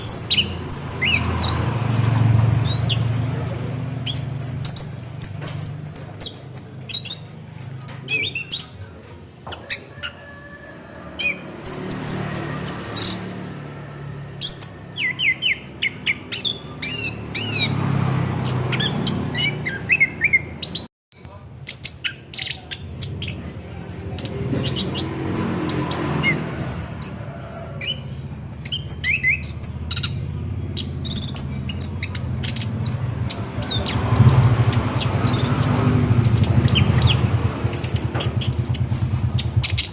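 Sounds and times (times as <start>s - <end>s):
thrush singing: 0.0s - 9.0s, 9.7s - 20.8s, 22.2s - 39.9s.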